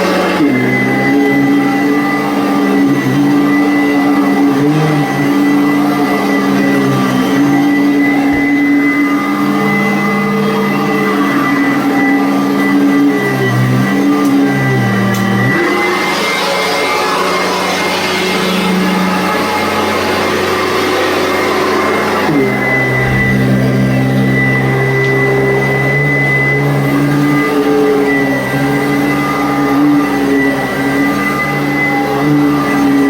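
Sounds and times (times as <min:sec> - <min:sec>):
vacuum cleaner running: 0:00.0 - 0:33.0.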